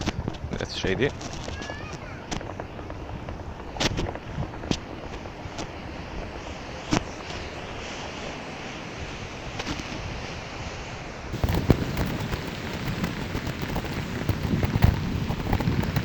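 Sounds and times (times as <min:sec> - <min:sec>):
crackle of knocks and rattles: 0:01.1 - 0:04.8, 0:11.4 - 0:16.0
board rolling over rough path: 0:11.3 - 0:16.0.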